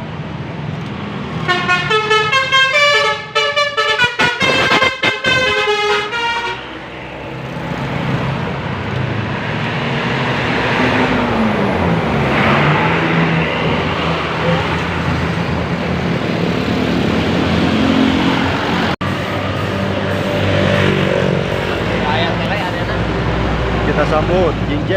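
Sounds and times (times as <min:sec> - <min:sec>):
heavy vehicle engine: 0:00.0 - 0:24.9
road traffic noise: 0:00.0 - 0:24.9
bus musical horn: 0:01.4 - 0:06.8.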